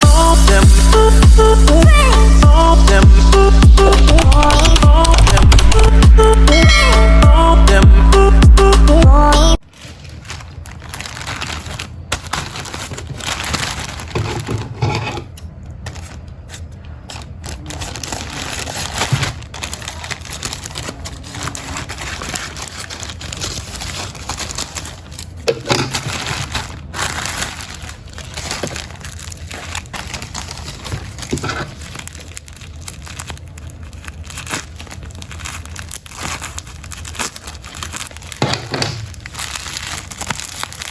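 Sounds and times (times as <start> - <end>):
electronic music: 0.0 - 9.6
packaging crinkling and rustling: 9.6 - 40.9.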